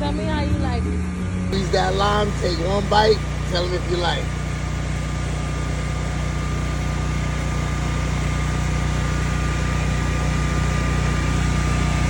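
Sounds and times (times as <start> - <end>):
engine idling: 0.0 - 12.0
thin steady whine: 0.0 - 12.0.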